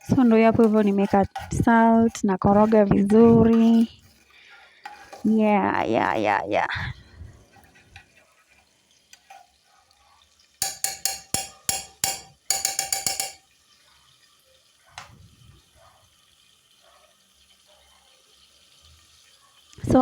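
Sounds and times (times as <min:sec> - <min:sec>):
metal spoon knocking on pot: 0:10.6 - 0:13.4.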